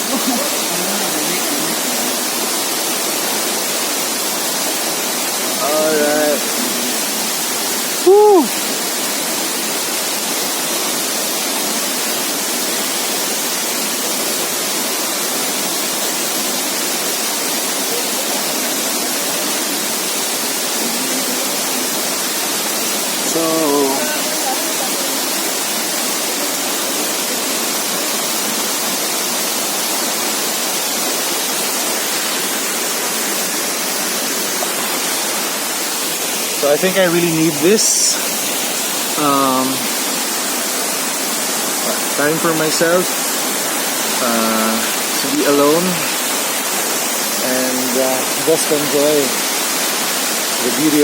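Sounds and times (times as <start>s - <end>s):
waterfall roaring: 0.0s - 51.0s
person calling out: 8.0s - 8.6s.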